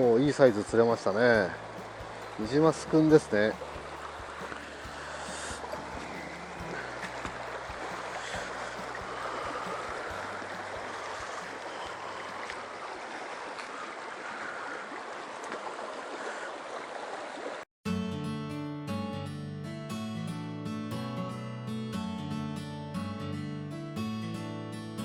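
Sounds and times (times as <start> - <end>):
acoustic guitar music: 0.0 - 12.8, 17.8 - 25.0
stream rushing over rocks: 0.0 - 17.6.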